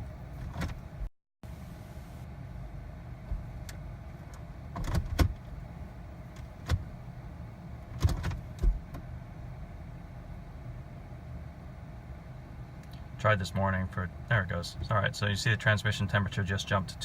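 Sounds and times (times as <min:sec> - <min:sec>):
gear selector clicks and clunks: 0:07.9 - 0:09.0.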